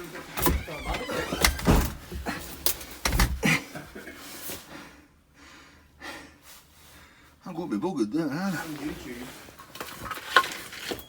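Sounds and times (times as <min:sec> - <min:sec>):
pry bar knocks and clanks: 0:00.4 - 0:03.5
heavy breathing: 0:04.6 - 0:07.4.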